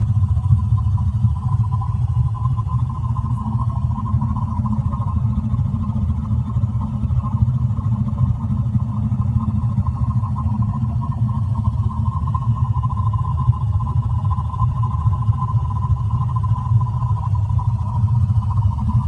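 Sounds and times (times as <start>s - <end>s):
wavering higher hum: 0.0s - 0.8s
water heater low rumble: 0.0s - 19.0s.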